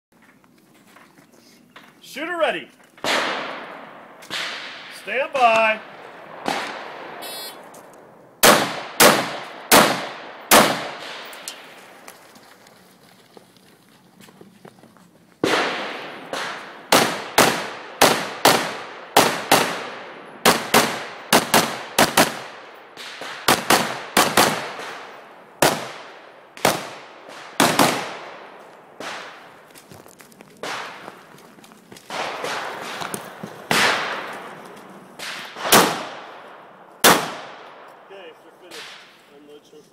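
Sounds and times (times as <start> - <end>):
rifle shots with echo: 3.0 - 7.2, 8.4 - 12.0, 15.4 - 29.7, 30.6 - 31.3, 32.1 - 34.6, 35.2 - 39.2.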